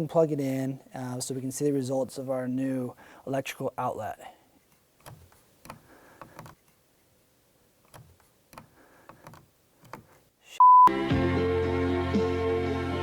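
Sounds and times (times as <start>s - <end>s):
short loud beep: 10.6s - 10.9s
loud music: 10.9s - 13.0s.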